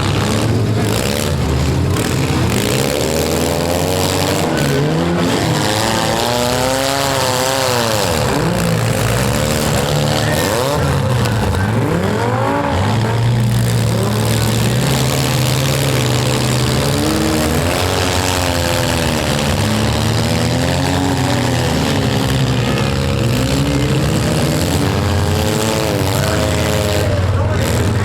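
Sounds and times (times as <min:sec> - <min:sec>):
car engines revving: 0:00.0 - 0:28.0.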